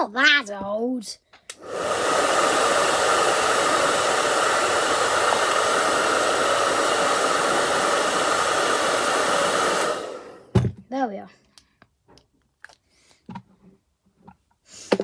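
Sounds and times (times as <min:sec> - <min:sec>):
white-noise hiss: 0:01.6 - 0:10.6.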